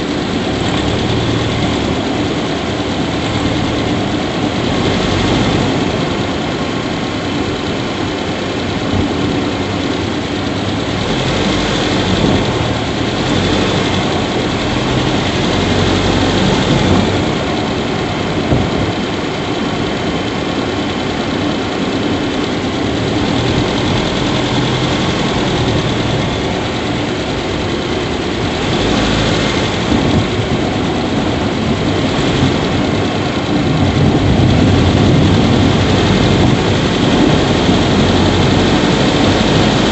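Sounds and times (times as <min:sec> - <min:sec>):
car engine idling: 0:00.0 - 0:39.9.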